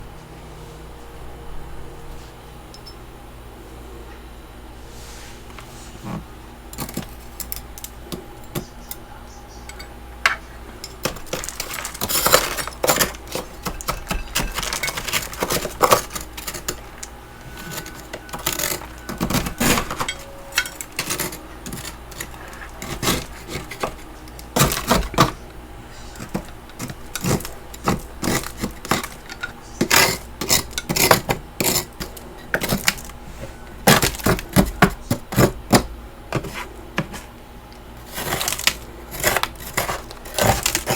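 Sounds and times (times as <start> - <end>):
utensil scraping freezer frost: 10.8 - 37.3, 38.0 - 40.9.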